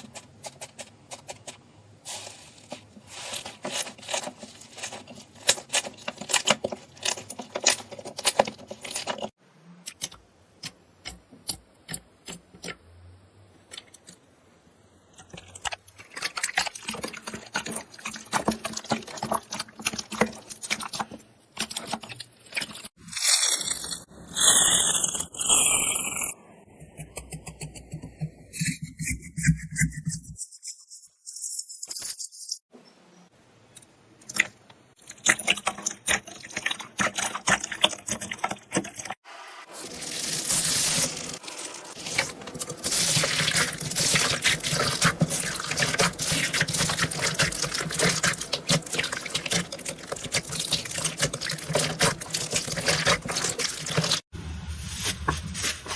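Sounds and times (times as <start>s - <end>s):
close crunching and crackling: 15.2s - 26.4s, 39.8s - 55.9s.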